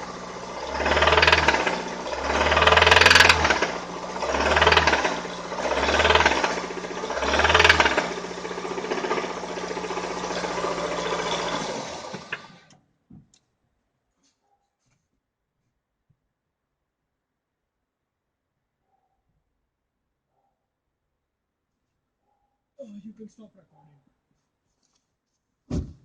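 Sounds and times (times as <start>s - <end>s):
knocking car engine revving: 0.0s - 12.7s.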